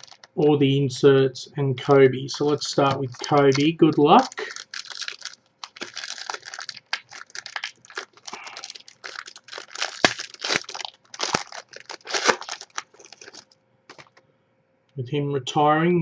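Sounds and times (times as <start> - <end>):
foil wrapper snaps: 0.0 - 0.3, 2.3 - 14.2
foil wrapper crinkling: 0.0 - 0.4, 2.3 - 14.2.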